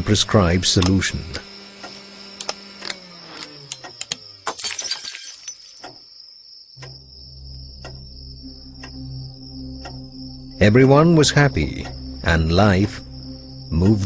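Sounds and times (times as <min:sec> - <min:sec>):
steady low hum: 0:00.0 - 0:04.4, 0:06.8 - 0:14.0
sharp ticks: 0:06.8 - 0:08.2, 0:08.8 - 0:14.0.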